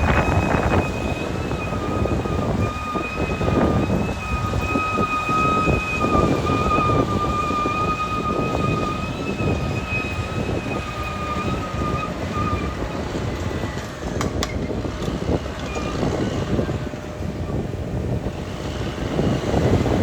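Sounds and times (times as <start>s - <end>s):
high whine: 0.0s - 13.9s
bulldozer diesel engine rumbling: 0.0s - 20.0s.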